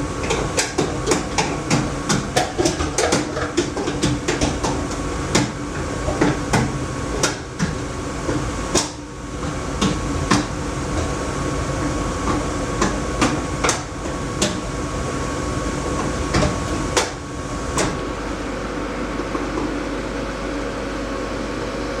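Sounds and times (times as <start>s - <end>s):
gas boiler humming: 0.0s - 22.0s.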